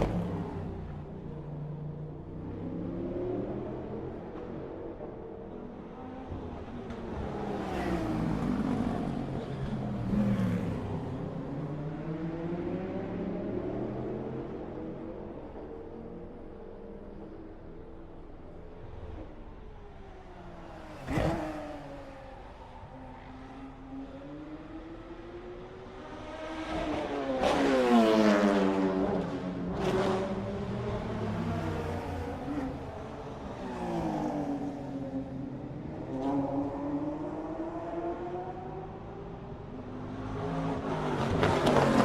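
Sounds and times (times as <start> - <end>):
race cars passing by: 0.0 - 42.0
race car engine passing by: 25.9 - 35.2.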